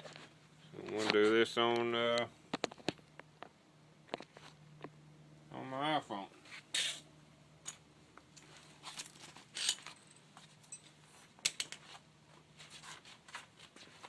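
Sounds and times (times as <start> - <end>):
faint steady hum: 0.0 - 14.0
light clicks and metallic clinks: 8.4 - 11.8.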